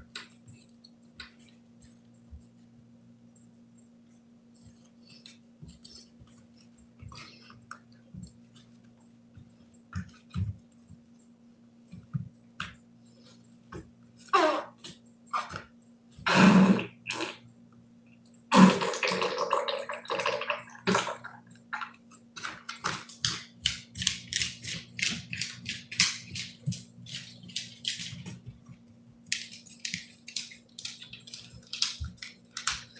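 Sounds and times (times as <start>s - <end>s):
dog passing gas: 16.2s - 17.4s, 18.5s - 19.4s
dog claws ticking on hard floor: 22.4s - 32.9s.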